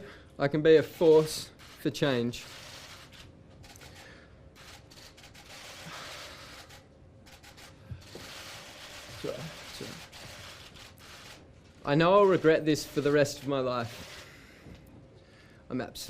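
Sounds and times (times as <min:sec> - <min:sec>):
man breathing unsteadily: 0:03.8 - 0:04.5, 0:14.0 - 0:15.7.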